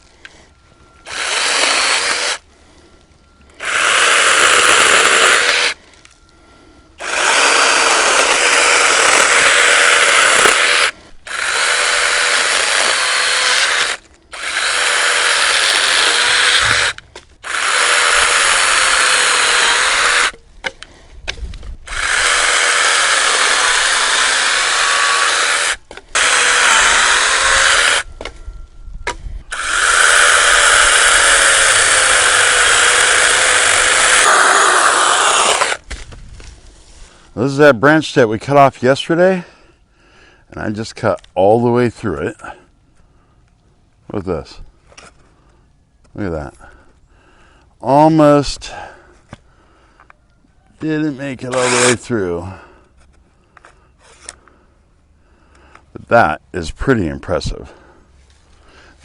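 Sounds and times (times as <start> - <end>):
mini chainsaw cutting branch: 1.1 - 2.4, 3.6 - 5.8, 7.0 - 20.4, 21.8 - 28.1, 29.5 - 36.0, 51.5 - 52.1.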